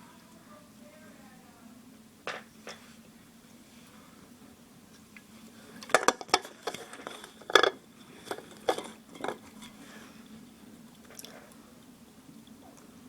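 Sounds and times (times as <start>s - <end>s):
tableware clinking: 6.0s - 9.8s.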